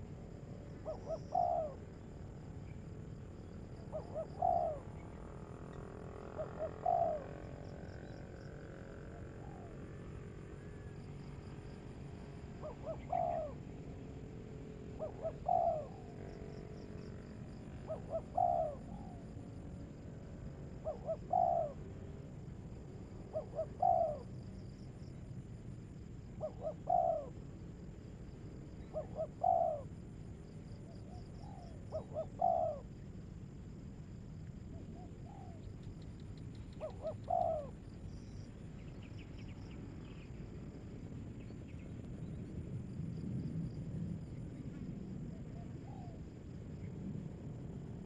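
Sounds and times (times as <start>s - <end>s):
dove cooing: 0.0s - 10.1s, 12.5s - 14.0s, 14.8s - 19.4s, 20.7s - 22.2s, 23.2s - 24.3s, 26.4s - 27.4s, 28.8s - 29.9s, 30.9s - 33.0s, 34.8s - 35.7s, 36.6s - 40.2s, 45.4s - 46.2s.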